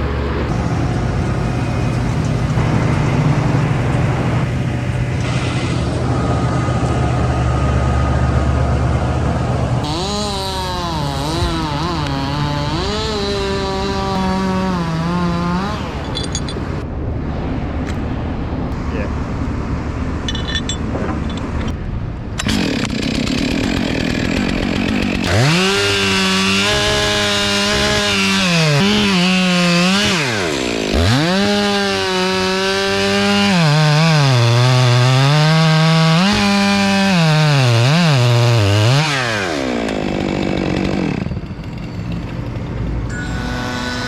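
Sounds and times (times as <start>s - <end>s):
chainsaw cutting wood: 0.5s - 7.2s, 9.8s - 16.8s, 22.4s - 44.0s.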